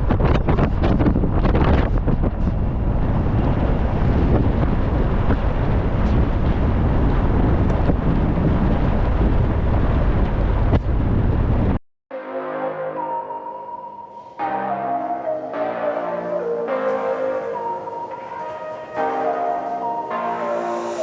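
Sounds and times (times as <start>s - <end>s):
wind buffeting microphone: 0.0s - 11.8s.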